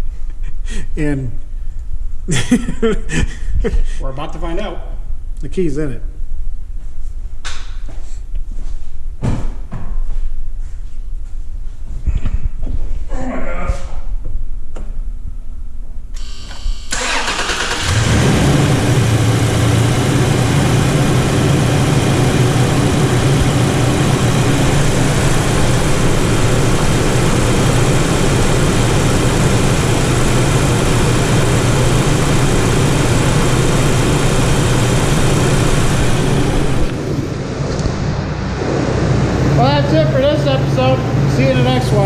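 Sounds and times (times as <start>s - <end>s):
truck engine starting and idling: 16.2s - 42.0s.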